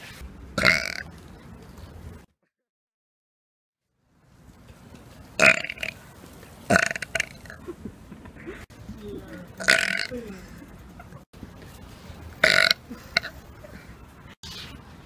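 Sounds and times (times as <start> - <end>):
person burping loudly: 0.6 - 1.0, 5.4 - 6.0, 6.7 - 7.6, 9.6 - 10.2, 12.4 - 13.4.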